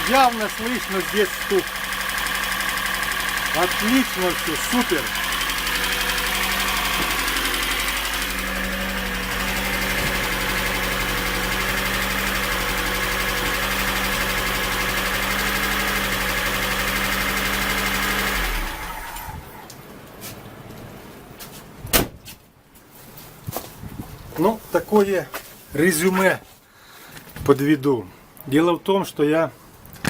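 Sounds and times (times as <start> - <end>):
car engine idling: 0.0 - 20.6.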